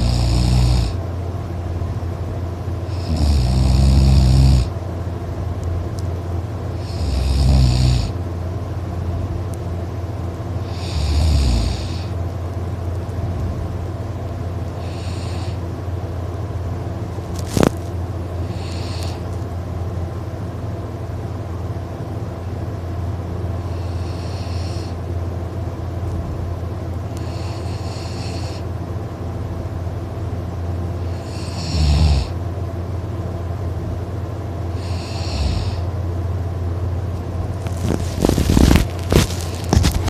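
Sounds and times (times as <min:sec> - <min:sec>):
person snoring: 0:00.0 - 0:01.0, 0:02.9 - 0:04.7, 0:06.8 - 0:08.2, 0:10.6 - 0:12.1, 0:14.8 - 0:15.6, 0:18.4 - 0:19.2, 0:23.6 - 0:25.0, 0:27.2 - 0:28.7, 0:31.1 - 0:32.4, 0:34.8 - 0:35.9
steady low hum: 0:00.0 - 0:40.0
hissing breathing: 0:14.8 - 0:15.6, 0:18.4 - 0:19.3, 0:23.6 - 0:25.0, 0:27.1 - 0:28.7, 0:34.8 - 0:35.9
loud irregular noise: 0:37.5 - 0:40.0.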